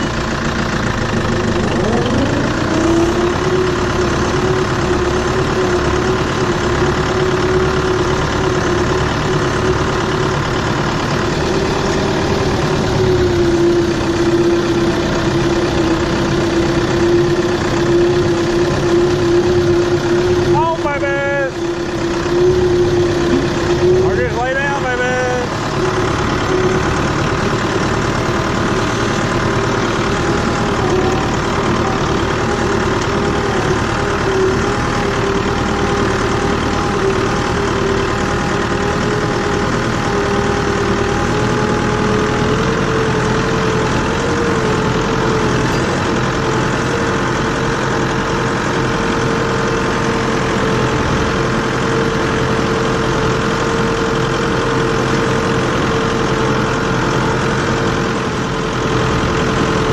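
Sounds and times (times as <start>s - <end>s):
tractor engine running: 0.0s - 59.9s.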